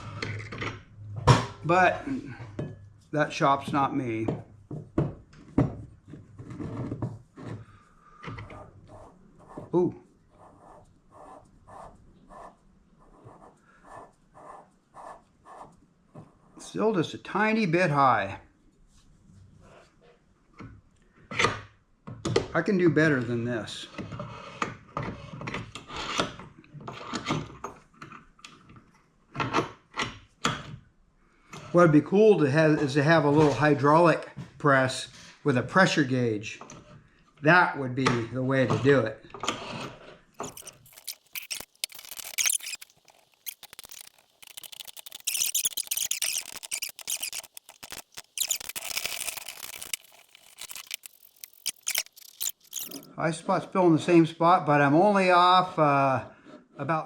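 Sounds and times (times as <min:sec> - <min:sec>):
tools scraping and rubbing: 0:00.0 - 0:00.9, 0:06.0 - 0:16.6, 0:38.6 - 0:53.2.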